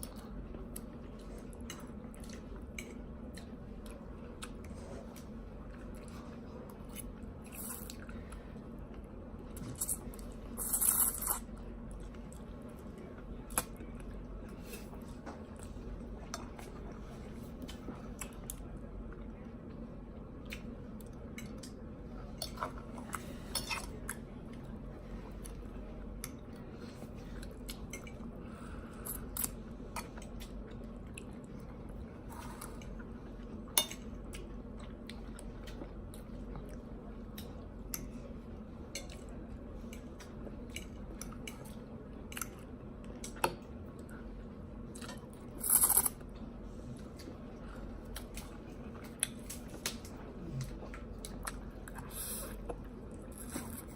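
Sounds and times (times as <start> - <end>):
steady low hum: 0.0 - 53.9
person chewing: 48.0 - 53.9.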